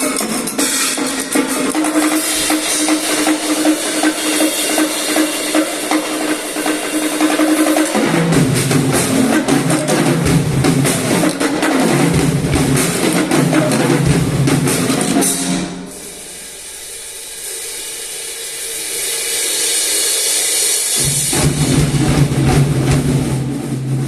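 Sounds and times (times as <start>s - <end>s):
pitched drums and cymbals: 0.0s - 24.0s.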